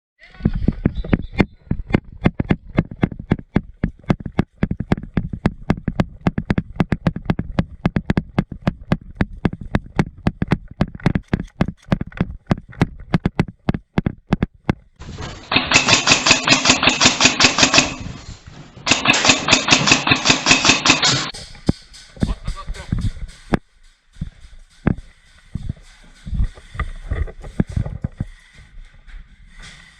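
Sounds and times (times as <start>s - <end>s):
sharp clicks and thumps: 0.3s - 29.9s
airsoft gun full auto bursts: 15.5s - 18.0s, 18.9s - 21.3s.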